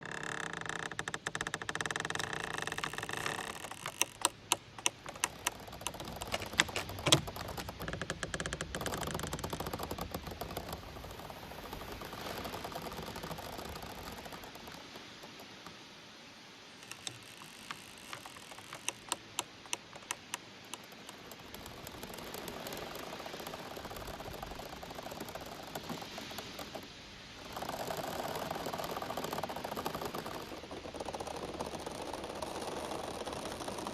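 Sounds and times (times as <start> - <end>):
bamboo stalks creaking: 0.0 - 15.9, 16.6 - 33.9
rustling: 0.0 - 15.9, 16.6 - 33.9
sharp clicks and knocks: 0.2 - 10.9, 16.8 - 22.5.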